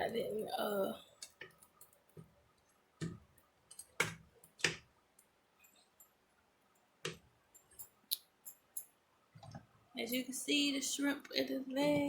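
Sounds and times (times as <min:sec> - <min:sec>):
kitchen knocks and clicks: 0:03.0 - 0:04.9.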